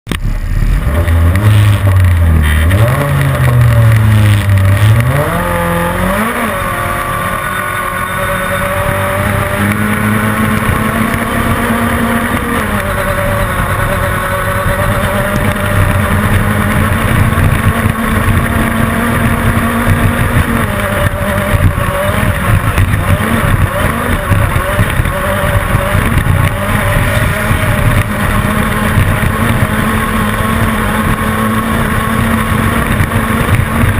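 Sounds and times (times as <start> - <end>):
race car engine revving: 0.2 - 33.9.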